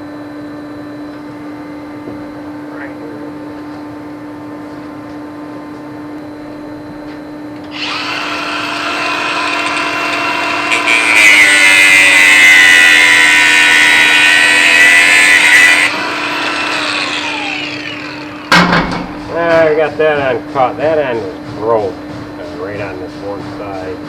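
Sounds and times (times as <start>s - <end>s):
power tool cutting cable: 7.7s - 18.6s.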